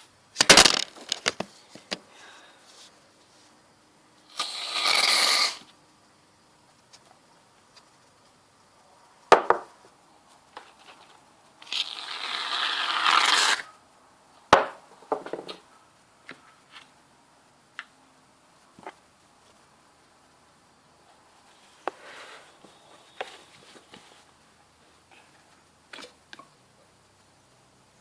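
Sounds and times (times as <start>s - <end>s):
aerosol foam hissing: 4.3s - 5.7s.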